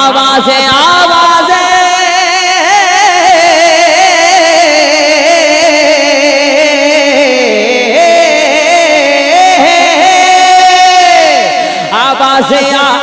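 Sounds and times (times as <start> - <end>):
person singing a long melismatic note: 0.0 - 13.0.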